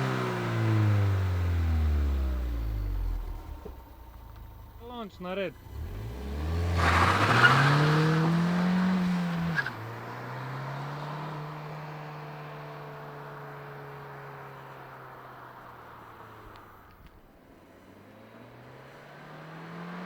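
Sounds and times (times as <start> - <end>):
car engine accelerating hard: 0.0 - 20.0.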